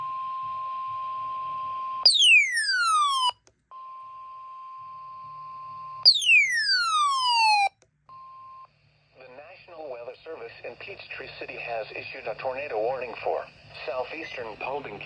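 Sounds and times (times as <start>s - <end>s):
falling electronic sweep: 2.1s - 3.3s, 6.1s - 7.7s
steady electronic tone: 2.1s - 3.3s, 6.1s - 7.7s.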